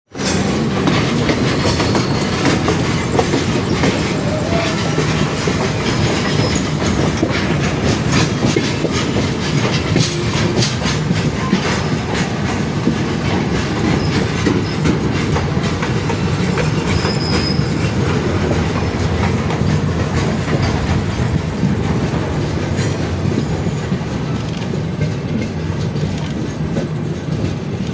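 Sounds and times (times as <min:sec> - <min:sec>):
train rumbling: 0:00.1 - 0:27.9
wheels clattering over rail joints: 0:00.1 - 0:27.9.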